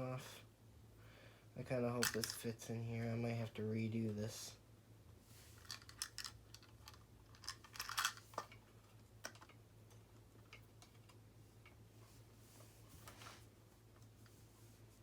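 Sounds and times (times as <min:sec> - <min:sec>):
faint low hum: 0:00.0 - 0:15.0
clicks and rattles of wires: 0:02.0 - 0:02.6, 0:05.6 - 0:11.8.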